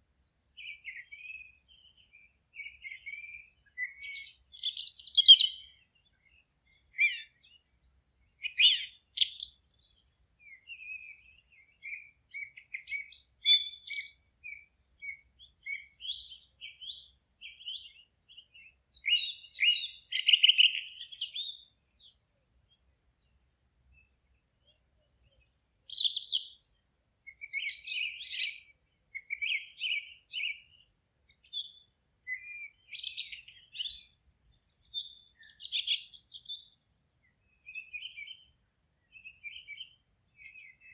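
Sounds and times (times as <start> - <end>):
songbirds singing: 0.0 - 40.9.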